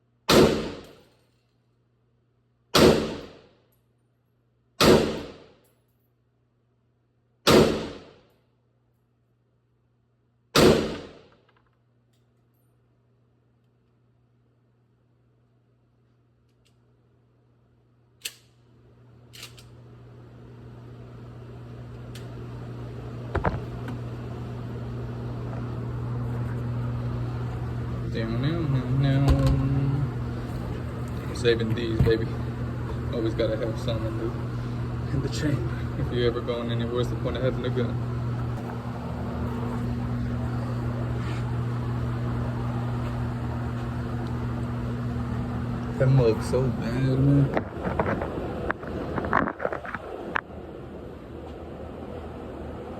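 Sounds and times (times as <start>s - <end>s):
steady low hum: 0.0s - 52.9s.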